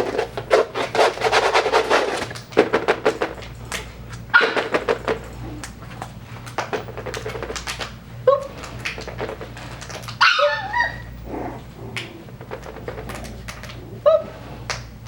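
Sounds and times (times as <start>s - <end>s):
puppy yipping: 10.2s - 11.1s
puppy whimpering: 10.2s - 14.3s.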